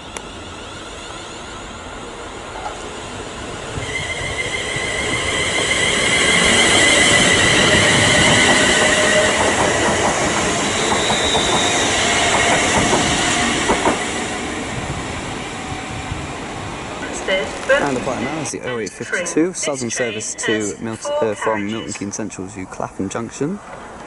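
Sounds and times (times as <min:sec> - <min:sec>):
electric train high whine: 0:00.0 - 0:22.6
train wheels rumbling: 0:00.0 - 0:24.0
wheels clacking over rail joints: 0:07.4 - 0:14.2.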